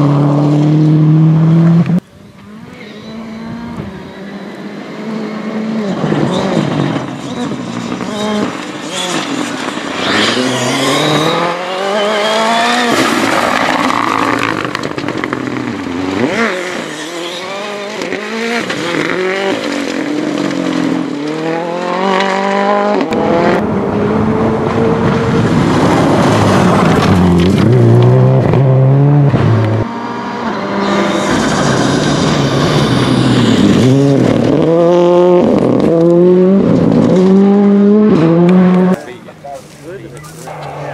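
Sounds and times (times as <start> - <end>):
rally car engines revving: 0.0 - 40.9.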